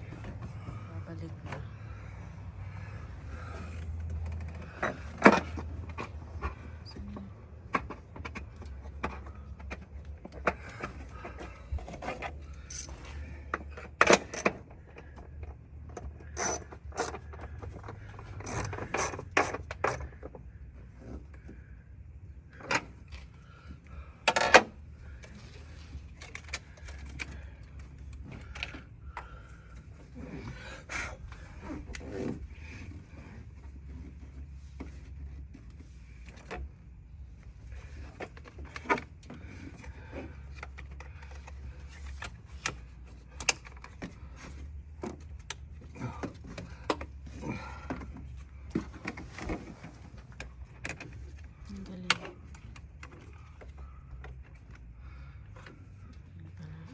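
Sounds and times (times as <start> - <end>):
hand tools clinking on metal: 12.6 - 13.0.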